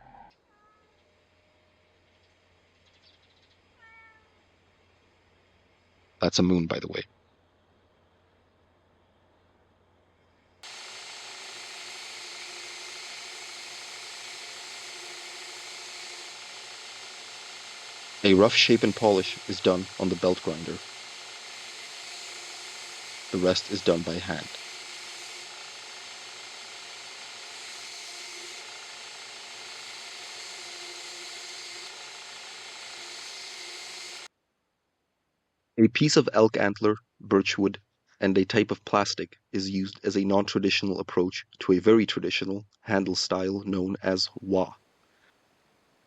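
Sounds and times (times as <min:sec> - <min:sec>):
belt grinder grinding steel: 0:10.6 - 0:34.3.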